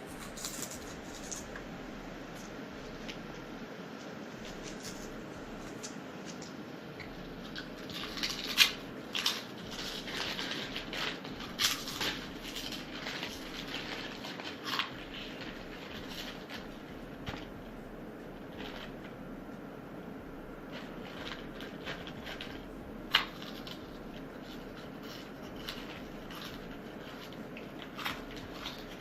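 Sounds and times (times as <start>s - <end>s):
potato chips crunching: 0.1s - 1.6s, 7.0s - 17.6s, 20.6s - 29.0s.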